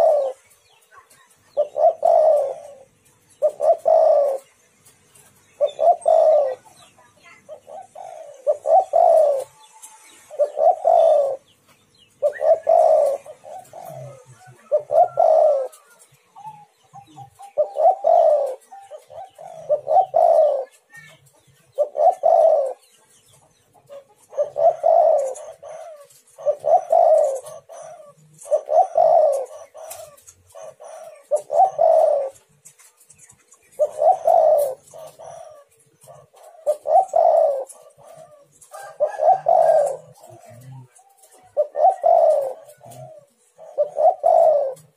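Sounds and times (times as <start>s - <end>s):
dove cooing: 0.0s - 44.9s.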